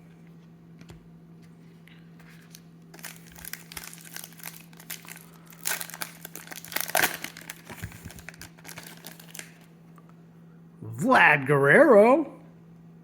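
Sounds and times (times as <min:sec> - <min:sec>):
card pack wrapper crinkling: 0:02.2 - 0:09.7.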